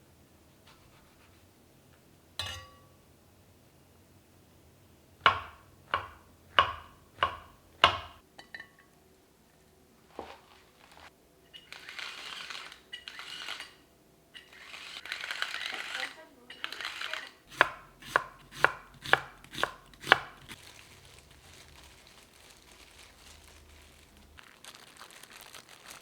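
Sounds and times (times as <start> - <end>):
kitchen utensils knocking: 2.4 - 3.0, 5.2 - 8.8, 17.5 - 20.6.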